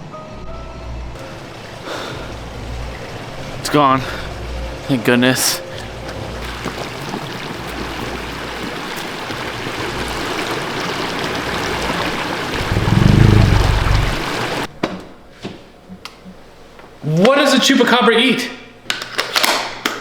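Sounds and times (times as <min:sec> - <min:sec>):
low rumble: 0:12.6 - 0:14.5
steady rushing noise: 0:12.6 - 0:14.7.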